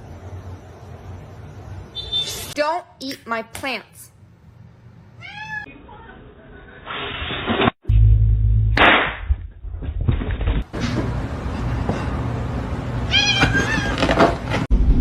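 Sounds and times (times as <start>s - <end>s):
cat meowing: 5.2s - 5.7s, 13.1s - 14.0s.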